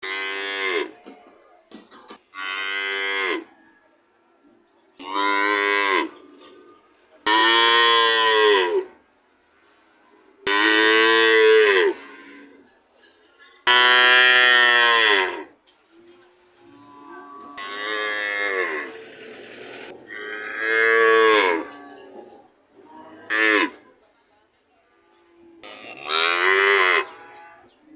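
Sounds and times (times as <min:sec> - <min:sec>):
cattle mooing: 0:16.7 - 0:19.1, 0:20.1 - 0:22.0, 0:25.6 - 0:27.7.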